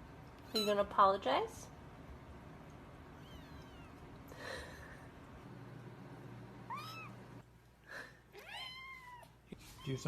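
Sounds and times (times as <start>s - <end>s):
kitten meowing: 3.2s - 4.0s, 6.7s - 7.2s, 8.4s - 9.3s.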